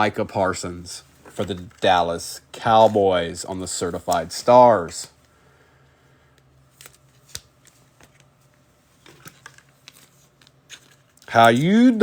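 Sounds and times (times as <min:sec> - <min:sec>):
trading cards clicking and scraping: 0:06.3 - 0:11.8.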